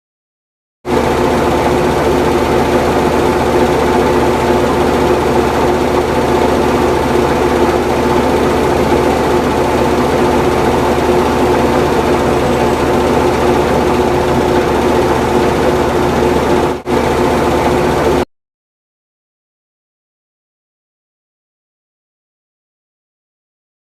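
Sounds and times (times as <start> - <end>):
lathe cutting hum: 0.9 - 18.2.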